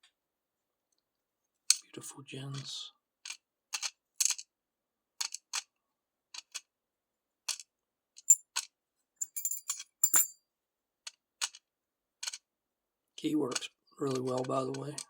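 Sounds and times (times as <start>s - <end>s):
small metal pieces dropping: 9.2s - 10.3s.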